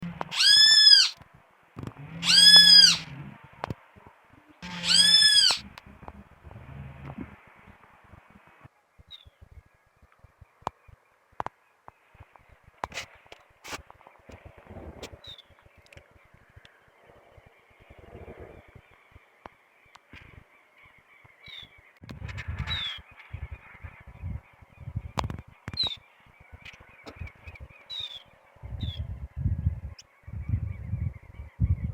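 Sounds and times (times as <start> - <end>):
bird calling: 0.0 - 1.2, 2.0 - 3.4, 4.6 - 6.0
birds calling: 0.0 - 1.2, 2.0 - 3.5, 4.4 - 6.3, 22.7 - 29.2
low rumble: 5.6 - 8.6.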